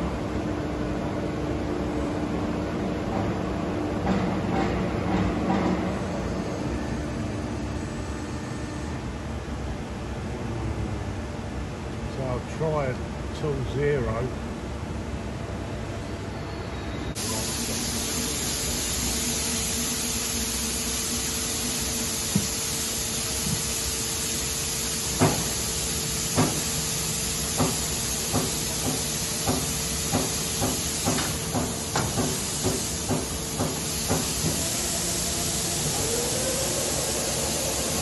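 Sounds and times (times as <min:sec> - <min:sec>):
lathe running with hiss and hum: 0:17.2 - 0:38.0
repeated knocking: 0:27.6 - 0:34.6.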